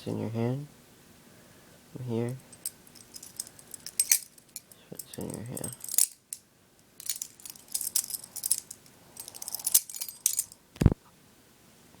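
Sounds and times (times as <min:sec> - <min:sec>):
butterfly knife clicking and rattling: 0:02.5 - 0:06.4, 0:07.0 - 0:10.6.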